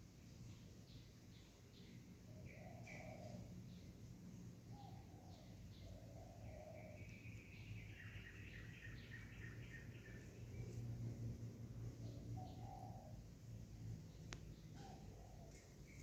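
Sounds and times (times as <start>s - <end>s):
high chirping bird trill: 0.5s - 16.0s
low bird coos: 2.3s - 3.8s, 4.6s - 10.6s, 12.0s - 13.4s, 14.6s - 16.0s
steady low hum: 3.1s - 16.0s.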